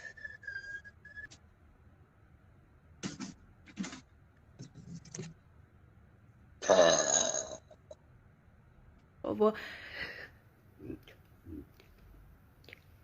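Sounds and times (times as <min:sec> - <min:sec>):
girl burping: 0:06.6 - 0:07.8.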